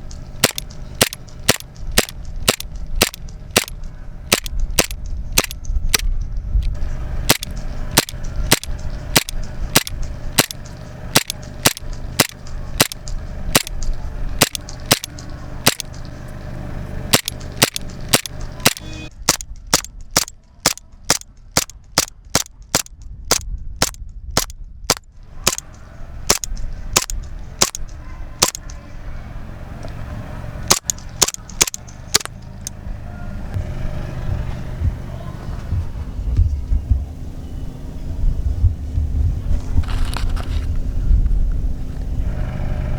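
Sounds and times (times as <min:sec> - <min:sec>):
pistol slide cycling: 0:00.0 - 0:06.1, 0:06.7 - 0:16.2, 0:17.1 - 0:28.8, 0:30.7 - 0:32.8
airsoft pistol shots: 0:00.4 - 0:06.1, 0:07.3 - 0:10.6, 0:11.2 - 0:13.0, 0:13.6 - 0:13.8, 0:14.4 - 0:15.9, 0:17.1 - 0:25.7, 0:26.3 - 0:27.8, 0:28.4 - 0:28.6, 0:30.7 - 0:32.3.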